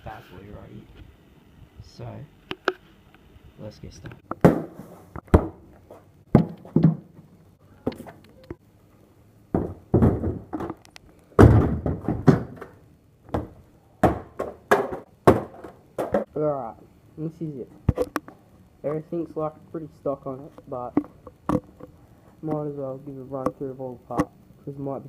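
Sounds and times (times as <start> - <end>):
knocks and thumps: 4.2 - 5.7, 6.3 - 7.3, 9.5 - 10.8, 11.4 - 16.3.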